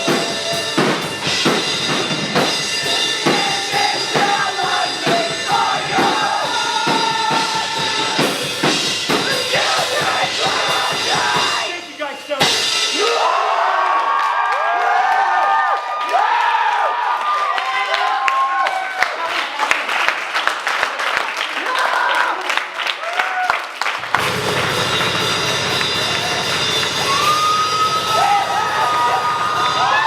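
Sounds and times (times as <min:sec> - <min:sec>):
crowd cheering and whistling: 0:00.0 - 0:01.5, 0:02.4 - 0:19.2, 0:23.0 - 0:30.0
metal band playing live: 0:00.0 - 0:13.2, 0:24.2 - 0:30.0
drum kit hitting hard: 0:00.0 - 0:13.4, 0:24.1 - 0:30.0.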